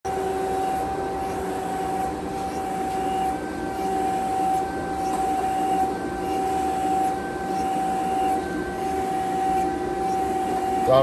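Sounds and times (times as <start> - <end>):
surface grinder humming and whining: 0.1 - 11.0.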